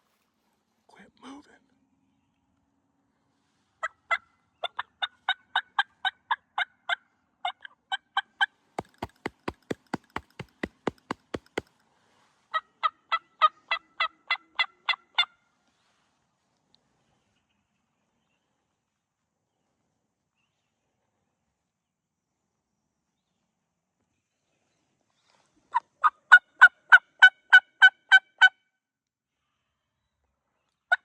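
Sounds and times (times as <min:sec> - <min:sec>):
sharp clicky turkey notes: 0:08.8 - 0:11.6.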